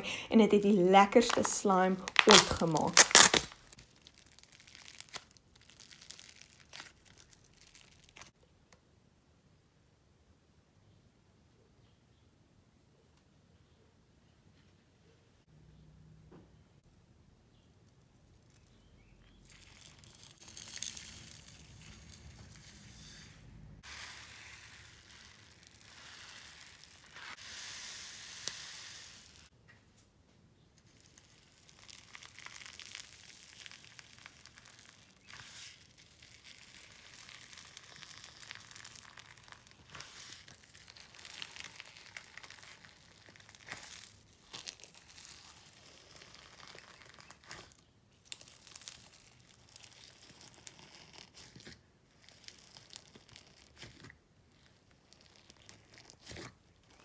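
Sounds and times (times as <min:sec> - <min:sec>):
slime crackling and squishing: 0:00.0 - 0:08.4, 0:18.3 - 0:23.2, 0:23.8 - 0:29.5, 0:30.8 - 0:57.0.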